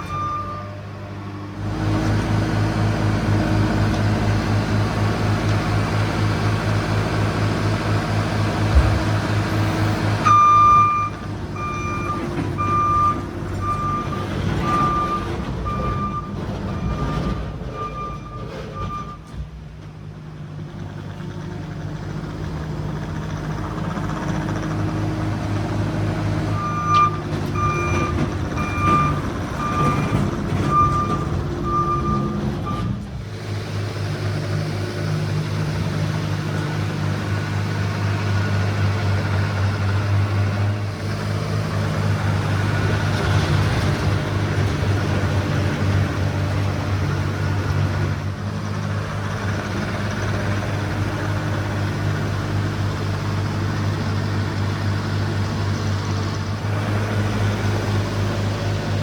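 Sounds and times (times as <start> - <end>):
diesel engine running: 0.0 - 59.0
backup alarm beeps: 26.6 - 33.0.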